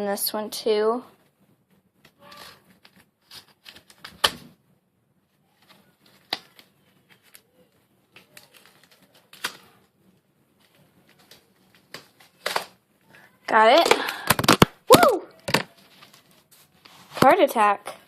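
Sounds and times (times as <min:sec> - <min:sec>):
foil wrapper crinkling: 0:05.6 - 0:09.9.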